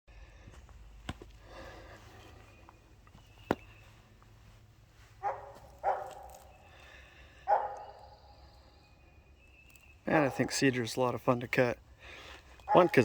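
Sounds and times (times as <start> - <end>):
sharp animal calls: 5.2 - 10.5, 12.1 - 13.0.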